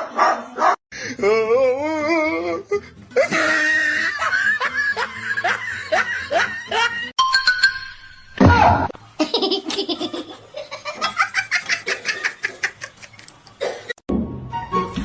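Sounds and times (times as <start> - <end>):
person laughing: 3.2 - 7.1, 9.2 - 13.3.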